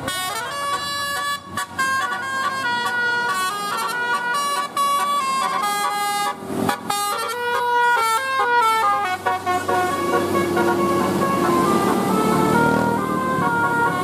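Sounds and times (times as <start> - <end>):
multi-tone bus horn melody: 0.0 - 14.0.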